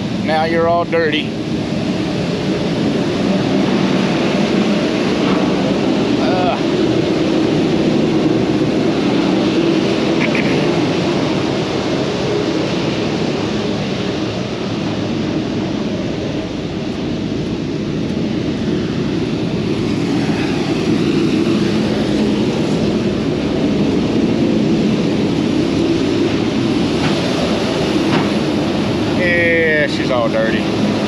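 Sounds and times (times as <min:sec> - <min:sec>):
truck diesel engine drone: 0:00.0 - 0:31.0.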